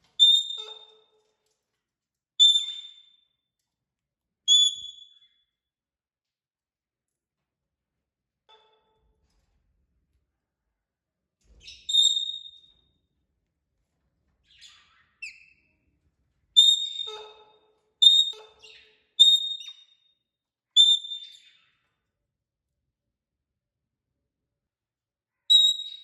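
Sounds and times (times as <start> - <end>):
parrot chirps: 0.2 - 0.9, 2.4 - 3.2, 4.5 - 5.4, 11.7 - 12.6, 16.6 - 17.4, 18.0 - 20.0, 20.8 - 21.7, 25.5 - 26.0
parrot whistling: 4.5 - 5.2, 16.6 - 17.2, 18.0 - 18.4, 20.8 - 21.4.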